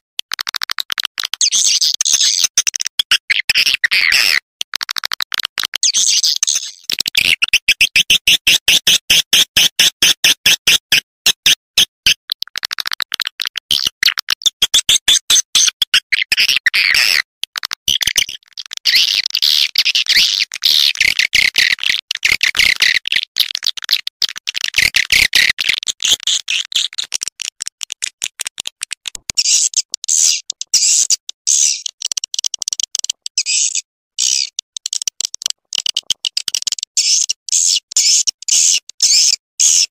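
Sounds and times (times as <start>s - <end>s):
swiftlet chirps and clicks: 28.7s - 39.4s.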